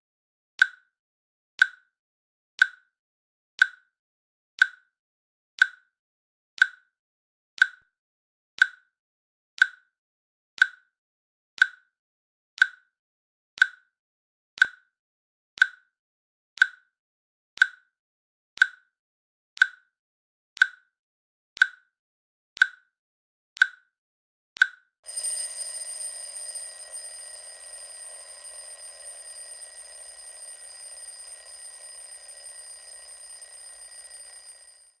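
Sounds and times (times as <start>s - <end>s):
timer clicks: 24.6s - 35.0s
timer alarm ringing: 25.0s - 35.0s.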